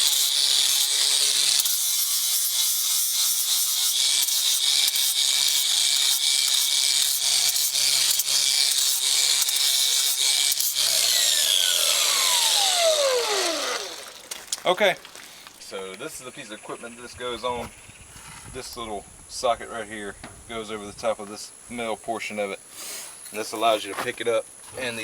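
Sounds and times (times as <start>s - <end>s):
grinding disc scraping steel: 0.0s - 14.4s
angle grinder whining: 0.0s - 14.6s.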